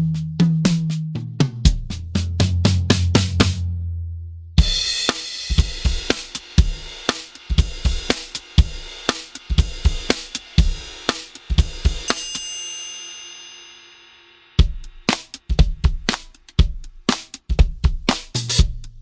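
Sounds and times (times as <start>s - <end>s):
drum kit playing dampened beat: 0.0s - 3.7s, 4.6s - 13.6s, 14.6s - 19.0s
ringing metallic percussion hit: 12.1s - 14.4s.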